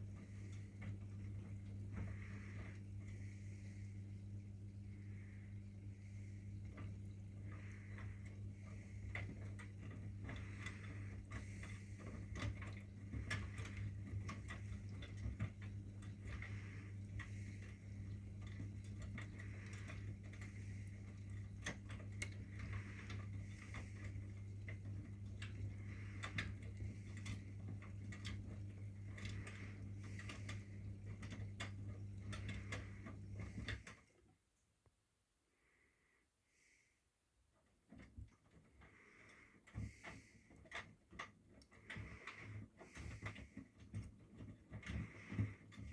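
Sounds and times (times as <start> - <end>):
washing machine hum: 0.0 - 34.6, 37.4 - 45.9
washing machine clicking: 6.5 - 34.1.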